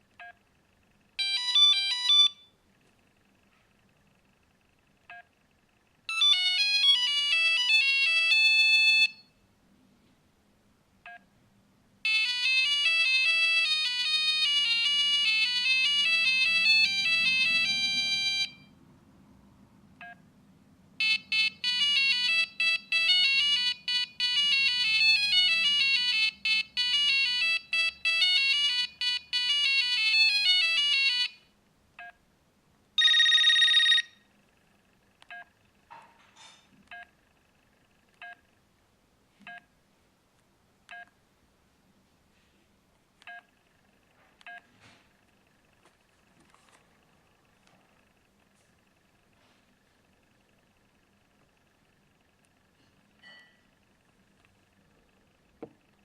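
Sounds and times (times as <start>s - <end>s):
monophonic phone ringtone: 1.2s - 2.5s, 6.1s - 9.3s, 12.0s - 18.7s, 21.0s - 31.4s, 33.0s - 34.2s.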